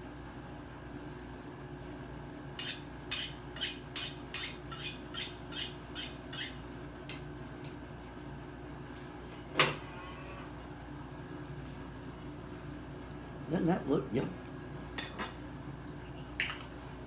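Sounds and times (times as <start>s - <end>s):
low background hum: 0.0s - 17.0s
knife scraping: 2.6s - 6.7s.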